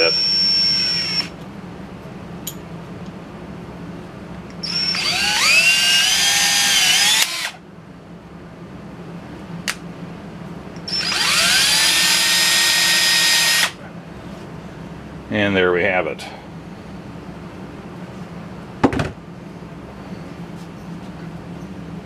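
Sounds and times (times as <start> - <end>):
electric drill whining: 0.0 - 1.3, 4.6 - 7.6, 10.9 - 13.8.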